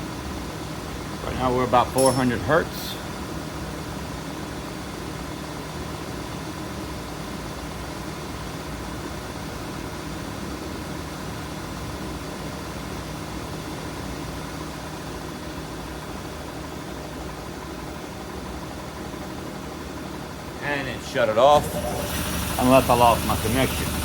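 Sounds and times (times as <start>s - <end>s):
faint constant hum: 0.0s - 24.0s
car engine idling: 20.8s - 24.0s.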